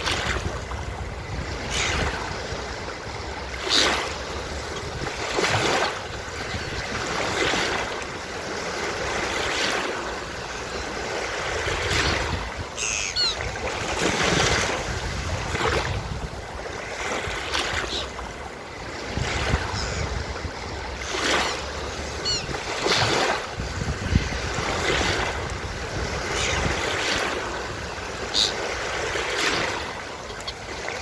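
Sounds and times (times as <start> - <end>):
ocean surf washing onto beach: 0.0 - 31.0
seagulls crying: 11.9 - 13.7, 17.8 - 18.2, 22.0 - 23.0, 28.0 - 28.8, 30.1 - 31.0.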